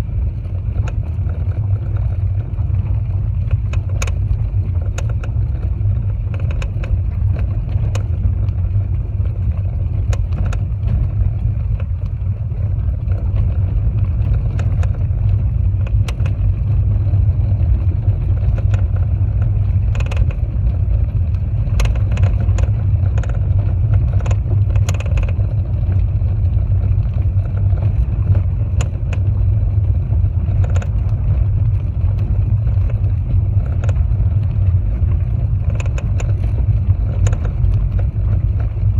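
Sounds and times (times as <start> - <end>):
road rumble: 0.0 - 38.9
suspension strut knocking: 14.3 - 15.1, 15.8 - 16.4, 18.3 - 20.4, 21.7 - 25.4.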